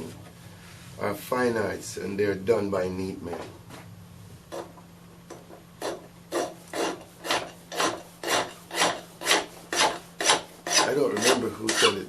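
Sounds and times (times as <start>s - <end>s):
steady low hum: 0.0s - 12.0s
hand file rasping on metal: 5.8s - 12.0s.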